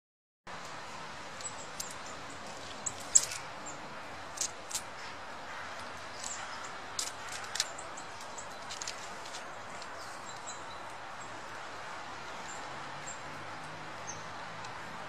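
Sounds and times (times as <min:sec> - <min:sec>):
animals chirping and clicking: 0:01.4 - 0:05.1, 0:05.7 - 0:11.6.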